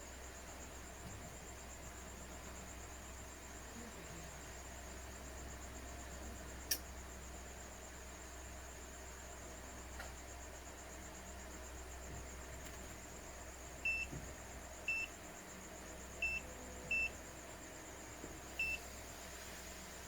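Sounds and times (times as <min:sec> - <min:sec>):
multimeter beeps: 0:13.8 - 0:14.1, 0:14.8 - 0:15.1, 0:16.2 - 0:17.2, 0:18.6 - 0:18.8.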